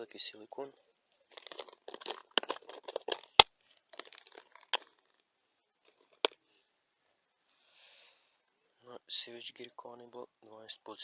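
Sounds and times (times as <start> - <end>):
plastic crinkling and rustling: 1.2 - 5.2.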